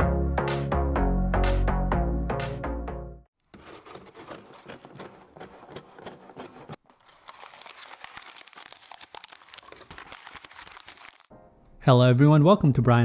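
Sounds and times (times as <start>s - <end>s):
packaging crinkling and rustling: 3.5s - 11.3s.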